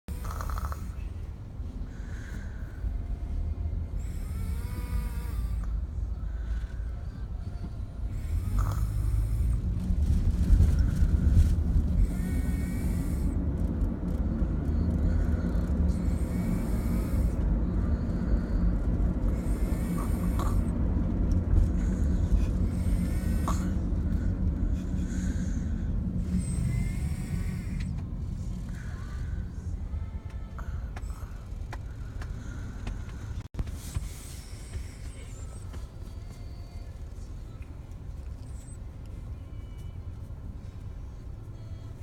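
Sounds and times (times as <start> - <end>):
person snoring: 0.1 - 1.0, 4.0 - 5.7, 8.1 - 9.6, 12.0 - 13.4, 15.0 - 18.6, 19.2 - 20.7, 21.8 - 27.9
low rumble: 0.1 - 42.0.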